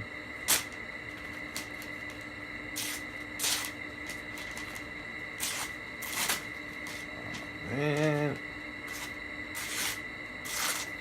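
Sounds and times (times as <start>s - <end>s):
faint steady hum: 0.0s - 11.0s
knife scraping on sandpaper: 2.8s - 3.8s, 5.4s - 7.1s, 8.9s - 11.0s.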